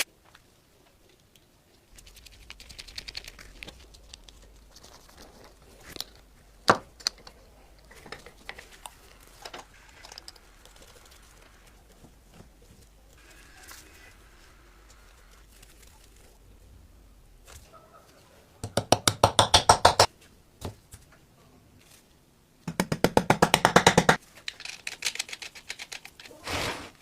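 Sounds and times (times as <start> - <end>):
small parts clicking and tapping: 5.9 - 11.1, 24.0 - 26.3.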